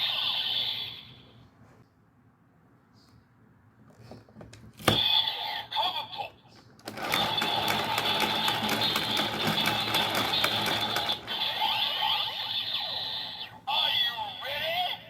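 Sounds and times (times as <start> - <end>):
toy lever ratcheting clatter: 6.8 - 11.6
toy belt electronic tones: 6.9 - 12.3.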